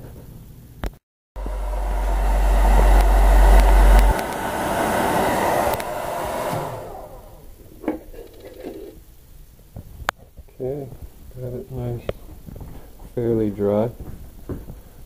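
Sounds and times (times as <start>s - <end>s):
hair dryer blowing: 1.4s - 7.8s.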